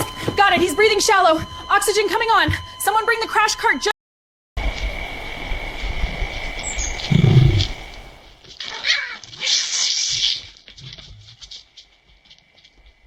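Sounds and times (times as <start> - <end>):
cat hissing: 7.1 - 7.8.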